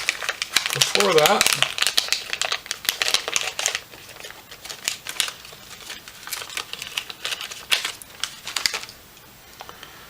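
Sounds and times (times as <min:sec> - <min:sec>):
crinkling rustles of wires: 0:00.0 - 0:09.8.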